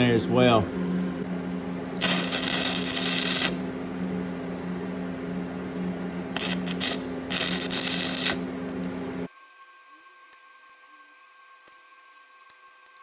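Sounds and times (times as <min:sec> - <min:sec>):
arc strikes: 0:00.0 - 0:05.0, 0:06.3 - 0:09.3
machine hum: 0:00.0 - 0:10.3
welding arc crackling and hissing: 0:02.0 - 0:04.8, 0:06.3 - 0:09.3.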